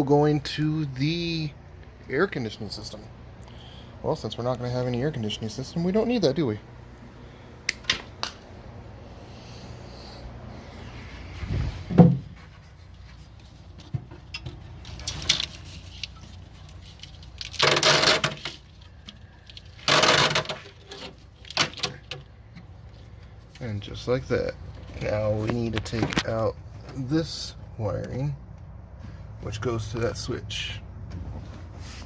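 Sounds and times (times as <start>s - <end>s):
loud thump: 11.8s - 12.4s.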